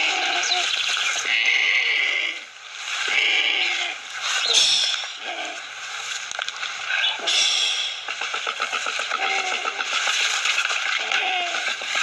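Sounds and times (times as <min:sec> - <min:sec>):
wavering animal cries: 0:00.0 - 0:02.4, 0:03.1 - 0:05.6, 0:08.4 - 0:10.0, 0:11.0 - 0:11.8.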